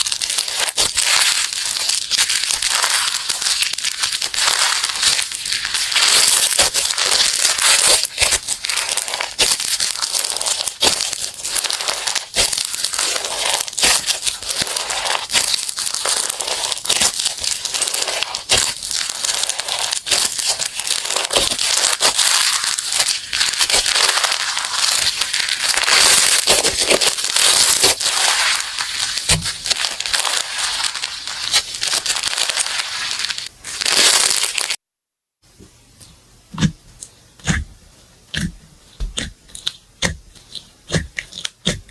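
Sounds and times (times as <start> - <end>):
slime crackling and popping: 0.0 - 34.8, 39.1 - 41.9.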